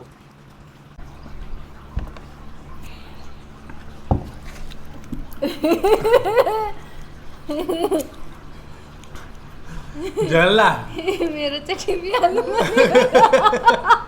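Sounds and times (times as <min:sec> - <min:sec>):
person laughing: 0:05.4 - 0:08.2, 0:09.6 - 0:14.0.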